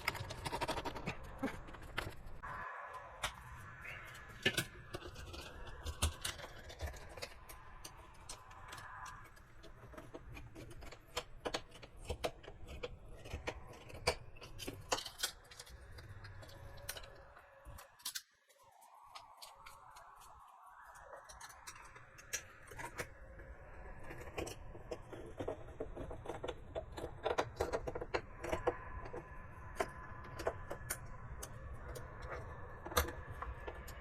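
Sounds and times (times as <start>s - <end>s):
hand tools clicking and tapping: 0.0s - 2.4s, 3.9s - 18.3s.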